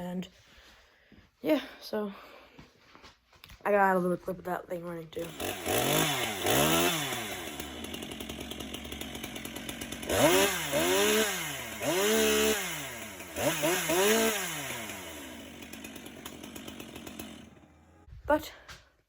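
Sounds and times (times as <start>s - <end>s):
chainsaw idling and revving: 5.1s - 18.6s.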